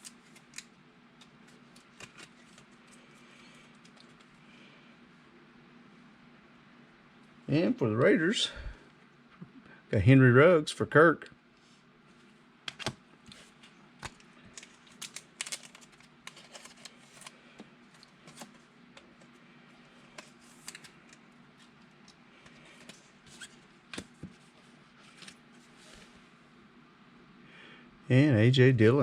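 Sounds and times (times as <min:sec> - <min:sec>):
cards shuffling: 0:00.0 - 0:04.3, 0:12.7 - 0:19.3, 0:20.0 - 0:21.8.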